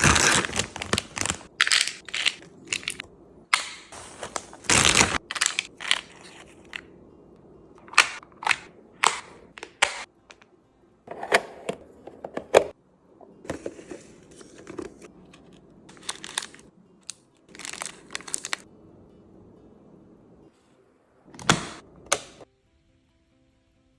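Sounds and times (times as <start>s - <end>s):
plastic packaging crinkling: 0.0s - 3.0s, 3.6s - 6.8s, 15.9s - 16.7s, 17.5s - 18.6s.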